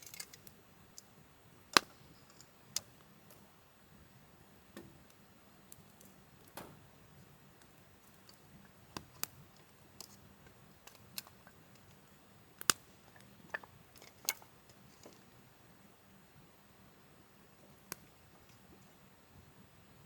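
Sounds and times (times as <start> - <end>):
wood fire crackling: 0.0 - 20.0
sharp pops of fire: 1.7 - 3.5, 4.7 - 14.8, 17.7 - 18.6.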